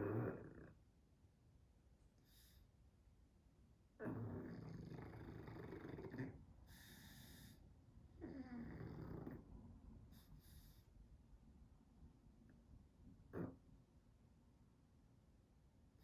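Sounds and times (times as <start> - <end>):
dog snoring: 0.0 - 0.8, 4.0 - 7.6, 8.2 - 9.5, 10.1 - 10.9, 13.2 - 13.6.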